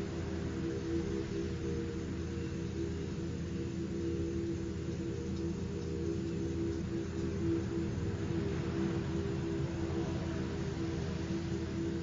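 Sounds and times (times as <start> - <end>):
low droning hum: 0.0 - 12.0.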